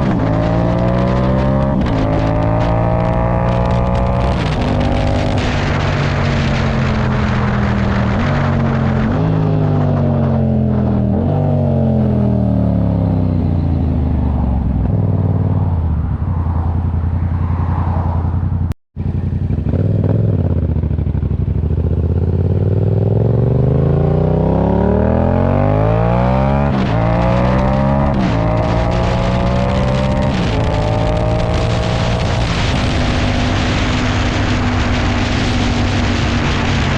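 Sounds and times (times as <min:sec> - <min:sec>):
engine accelerating through gears: 0:22.5 - 0:36.9.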